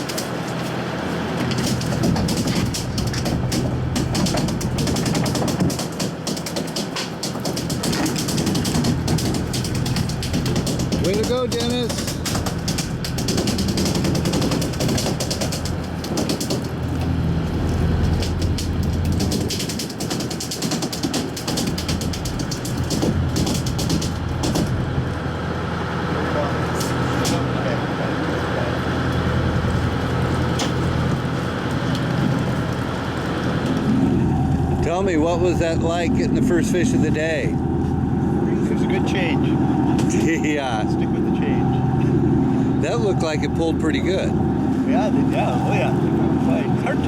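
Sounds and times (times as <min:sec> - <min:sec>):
boat engine hum: 0:00.0 - 0:47.0.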